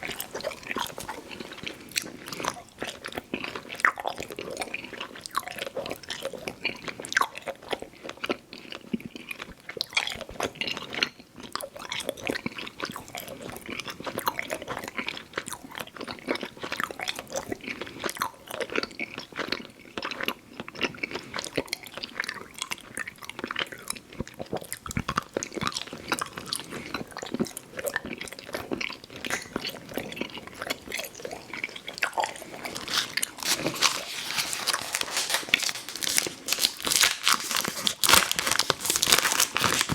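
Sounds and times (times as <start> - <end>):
sticky wet chewing: 0.0 - 10.8, 21.1 - 39.9.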